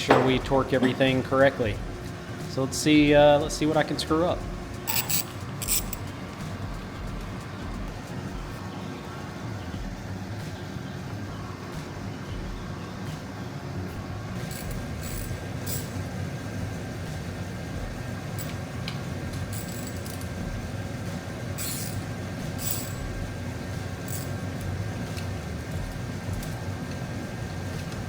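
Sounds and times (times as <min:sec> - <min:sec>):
steady low hum: 0:00.0 - 0:28.0
hand tools clinking on metal: 0:04.8 - 0:06.1, 0:14.5 - 0:16.0, 0:18.4 - 0:20.4, 0:21.6 - 0:23.2, 0:24.0 - 0:25.3.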